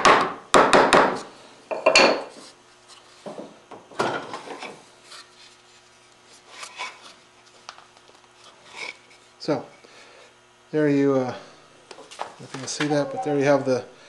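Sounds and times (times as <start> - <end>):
sharp wooden knock: 0.0 - 1.2.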